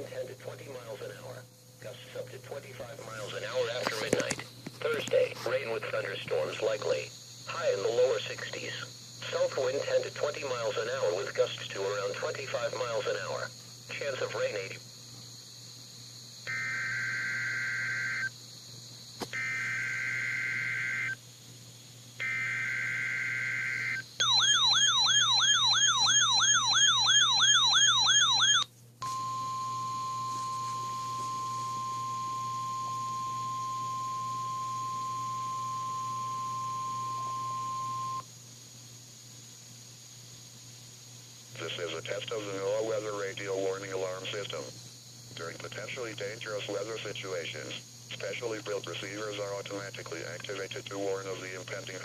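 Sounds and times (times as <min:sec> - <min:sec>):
steady warning alarm tone: 0:16.4 - 0:18.4, 0:19.3 - 0:21.2, 0:22.2 - 0:38.2
warbling alert siren: 0:16.5 - 0:18.3, 0:19.4 - 0:21.2, 0:22.2 - 0:38.2
digital data tone bursts: 0:16.5 - 0:18.4, 0:19.4 - 0:21.2, 0:22.2 - 0:38.3.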